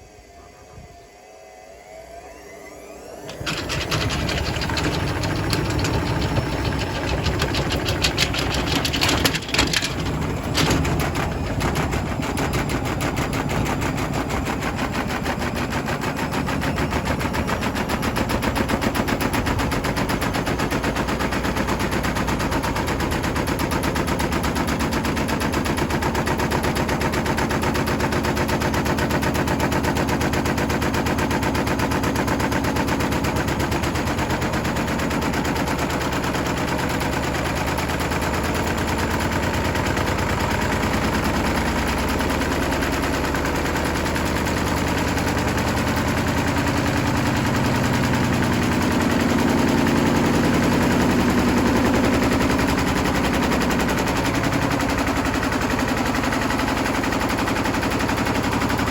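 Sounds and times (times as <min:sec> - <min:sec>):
washing machine motor running: 0:03.2 - 0:58.9
brick rattling in washing machine drum: 0:03.3 - 0:15.8.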